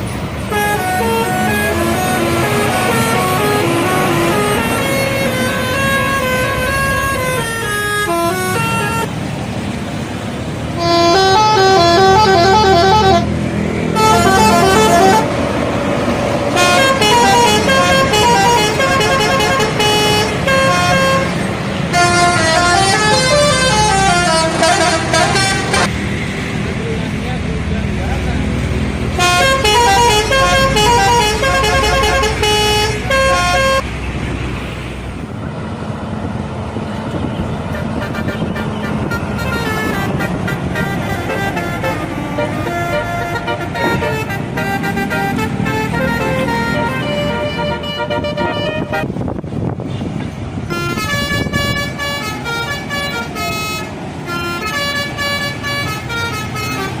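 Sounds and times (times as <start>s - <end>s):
engine and road noise: 0.0s - 57.0s
multi-tone air horn melody: 0.5s - 9.2s, 10.8s - 15.4s, 16.5s - 25.9s, 29.2s - 33.8s, 37.7s - 49.3s, 50.7s - 57.0s.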